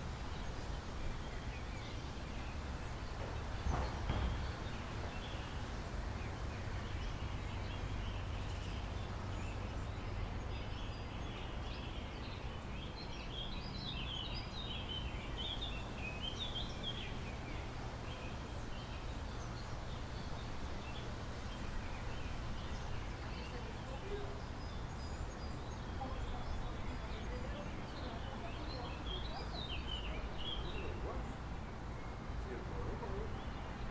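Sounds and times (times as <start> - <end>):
small birds chirping: 0.0 - 33.9
street rumble: 18.4 - 33.9.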